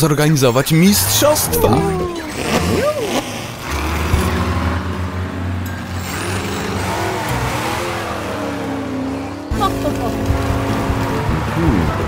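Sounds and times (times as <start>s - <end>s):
background music: 3.7s - 12.0s.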